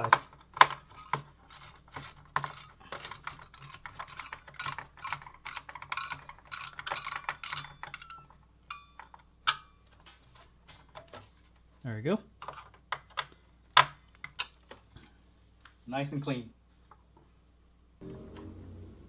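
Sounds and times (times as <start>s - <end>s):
screwdriver clicks and rattles: 0.0s - 8.4s.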